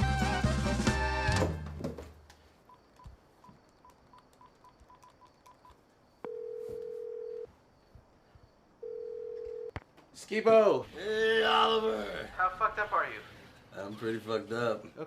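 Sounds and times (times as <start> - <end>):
keypad beeps: 2.7 - 6.6
phone ringing tone: 4.4 - 7.5, 8.8 - 9.7.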